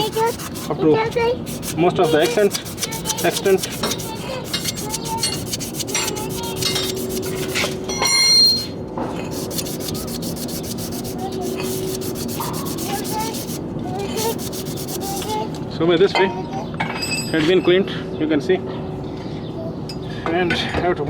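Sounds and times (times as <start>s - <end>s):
abrasive scraping brake lining: 0.0s - 7.9s, 8.5s - 15.5s.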